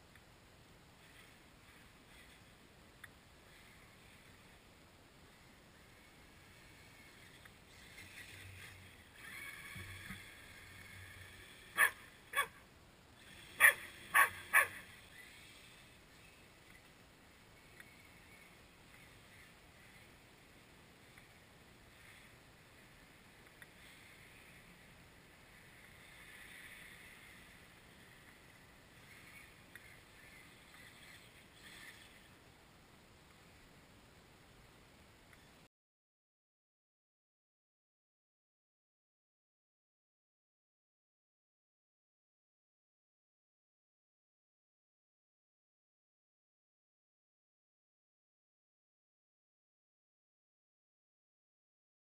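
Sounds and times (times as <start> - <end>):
faint background hiss: 0.0 - 35.7
dog barking: 11.8 - 12.6, 13.6 - 14.8.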